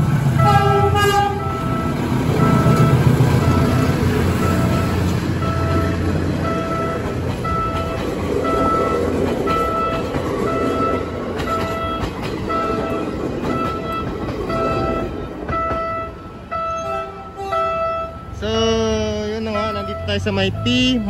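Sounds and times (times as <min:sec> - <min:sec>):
traffic rumble: 0:00.0 - 0:21.0
repeating two-note music: 0:12.6 - 0:21.0.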